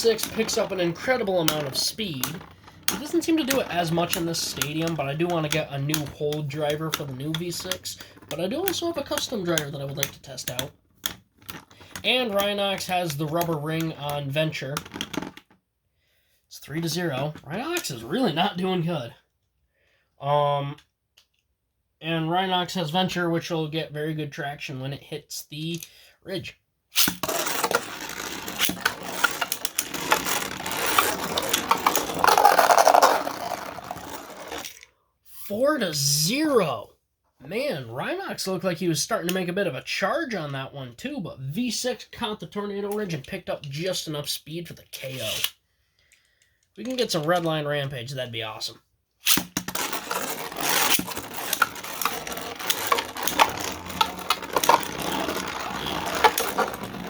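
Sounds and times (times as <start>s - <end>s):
spinning tops whirring and scraping: 0.0s - 10.7s, 27.0s - 34.8s, 49.3s - 57.0s
spinning tops clicking as they collide: 27.0s - 34.7s, 49.3s - 57.0s.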